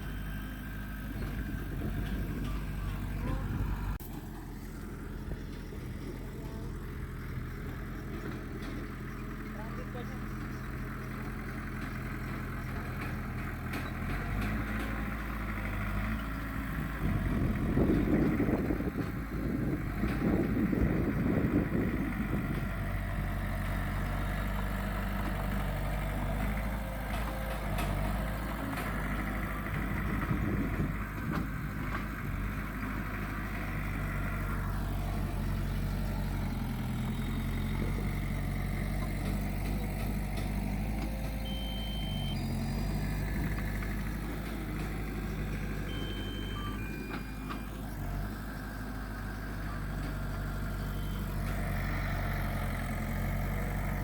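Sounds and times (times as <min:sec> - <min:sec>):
diesel engine running: 0:00.0 - 0:54.0
short high beeps: 0:41.5 - 0:42.5, 0:45.9 - 0:47.7.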